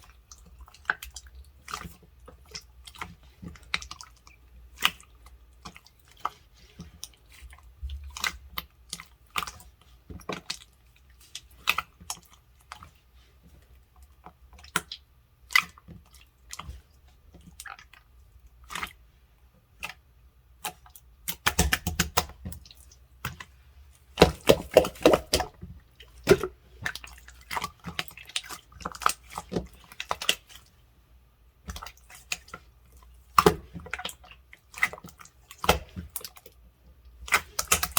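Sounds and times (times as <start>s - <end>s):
slime clicking and popping: 20.6s - 22.5s, 37.2s - 37.9s.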